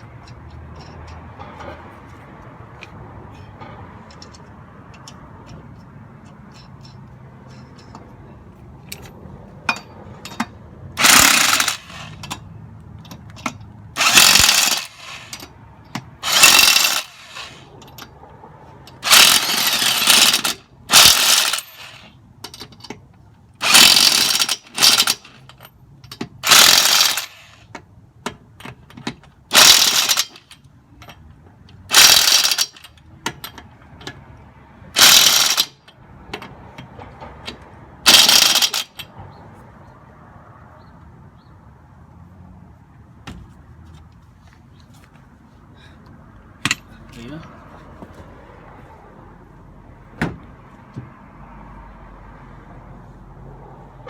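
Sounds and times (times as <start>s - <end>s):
mechanical tool bursts: 11.0s - 12.2s, 14.0s - 15.4s, 16.2s - 17.7s, 19.0s - 22.1s, 23.6s - 25.3s, 26.4s - 27.6s, 29.5s - 30.4s, 31.9s - 32.8s, 35.0s - 35.8s, 38.1s - 39.0s.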